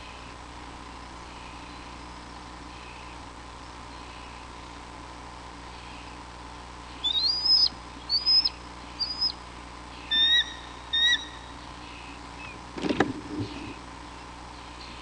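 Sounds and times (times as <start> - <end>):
small animal whistled calls: 7.0 - 9.4, 10.0 - 11.5.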